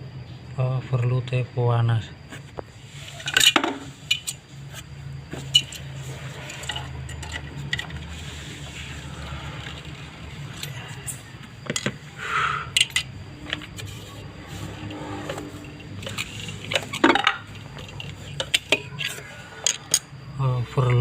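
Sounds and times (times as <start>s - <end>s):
metallic clicks and clinks: 12.7s - 13.1s, 15.6s - 20.2s.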